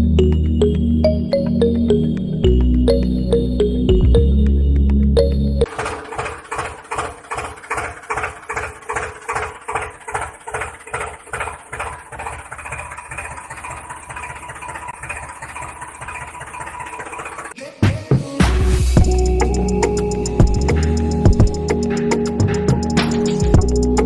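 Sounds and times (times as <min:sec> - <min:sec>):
engine-like chugging: 0:05.6 - 0:17.6, 0:18.9 - 0:24.0.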